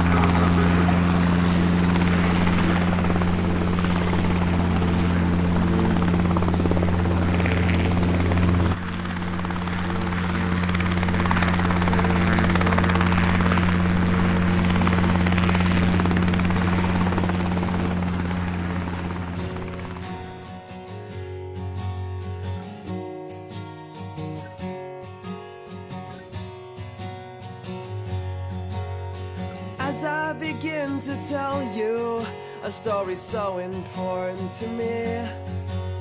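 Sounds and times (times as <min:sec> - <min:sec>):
drone propellers buzzing: 0:00.0 - 0:20.9.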